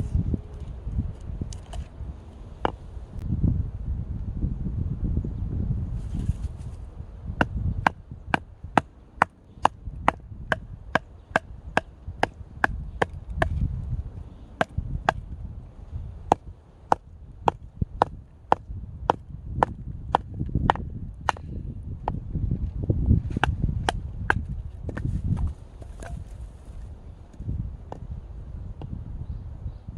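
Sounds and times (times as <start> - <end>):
knife splitting firewood knocks: 23.3 - 26.4.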